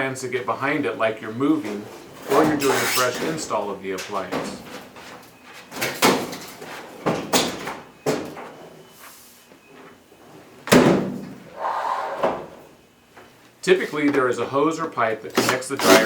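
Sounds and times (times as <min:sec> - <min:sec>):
clothes dryer scraping: 0:00.2 - 0:07.3, 0:13.6 - 0:16.0
heavy thump: 0:12.2 - 0:12.6.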